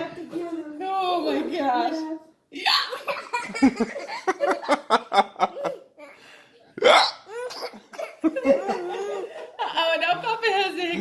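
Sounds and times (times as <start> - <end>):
people laughing: 2.9 - 5.8, 8.0 - 10.4
loud hiccup: 6.8 - 7.2.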